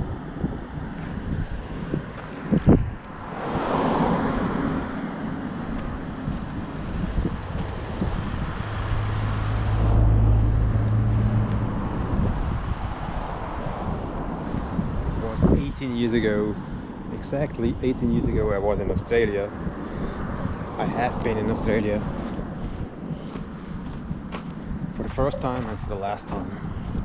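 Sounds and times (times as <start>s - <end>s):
low engine hum: 0.0s - 27.0s
wind buffeting microphone: 0.0s - 27.0s.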